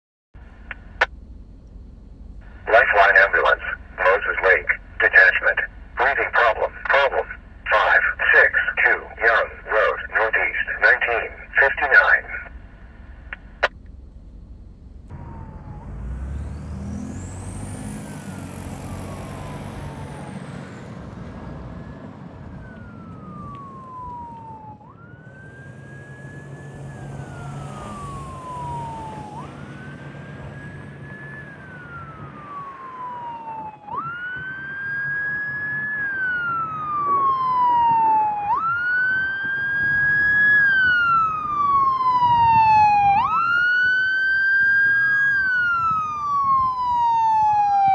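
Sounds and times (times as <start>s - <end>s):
emergency vehicle siren wailing: 27.0s - 47.9s.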